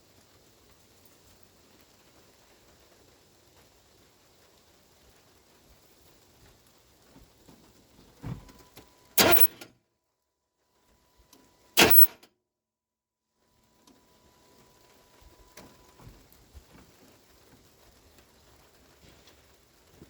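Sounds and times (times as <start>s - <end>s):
engine starter cranking: 9.2s - 9.7s, 11.8s - 12.3s.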